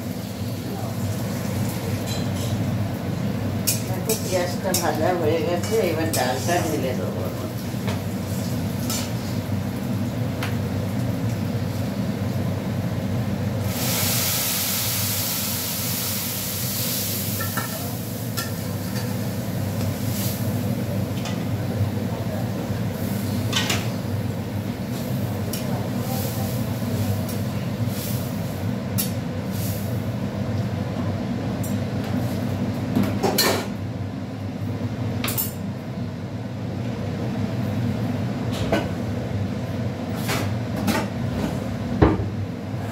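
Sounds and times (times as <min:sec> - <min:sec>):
food sizzling in hot oil: 0:13.5 - 0:20.8.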